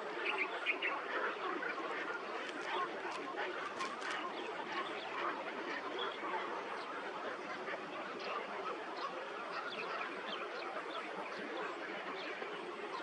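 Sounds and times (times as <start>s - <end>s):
flock of birds calling: 0.0s - 13.0s.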